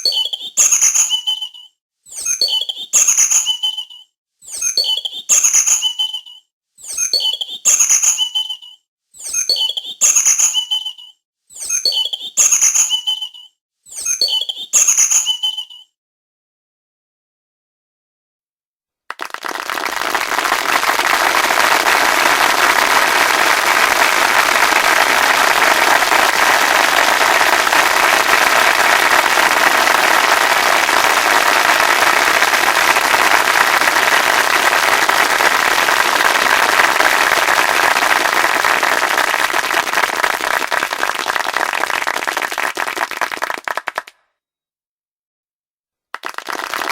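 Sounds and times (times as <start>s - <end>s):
dense clapping: 19.1s - 44.2s, 46.2s - 46.9s.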